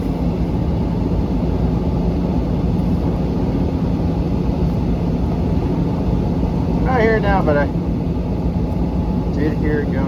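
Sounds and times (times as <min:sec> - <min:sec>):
diesel engine running: 0:00.0 - 0:10.0.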